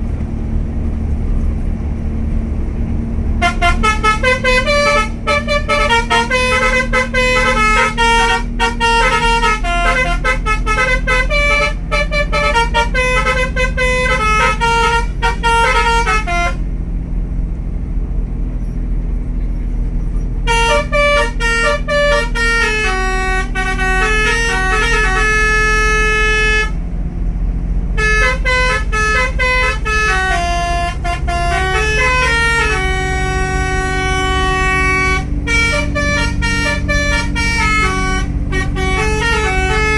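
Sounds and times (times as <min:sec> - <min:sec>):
bus engine rumble: 0:00.0 - 0:39.9
multi-tone air horn tune: 0:03.4 - 0:16.6, 0:20.4 - 0:26.8, 0:28.0 - 0:39.9.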